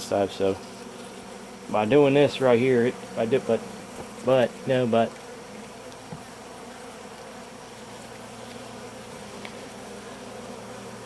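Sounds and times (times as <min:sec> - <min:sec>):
honeybees buzzing: 0:00.0 - 0:11.0.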